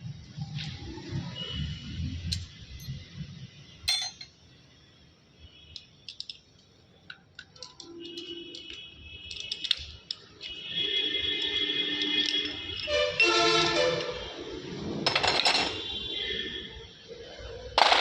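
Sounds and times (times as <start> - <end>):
metal parts clinking: 3.9 - 4.3, 5.8 - 10.5, 11.4 - 12.9, 15.1 - 15.9.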